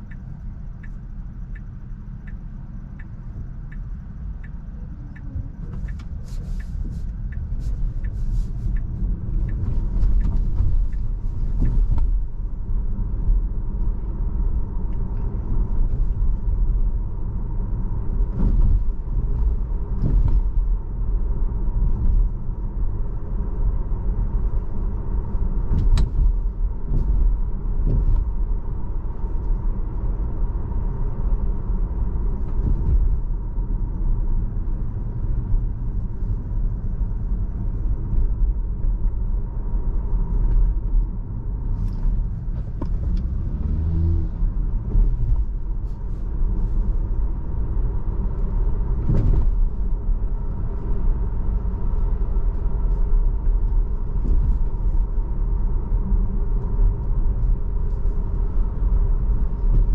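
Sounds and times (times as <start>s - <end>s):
road and tyre rumble: 0.0s - 59.9s.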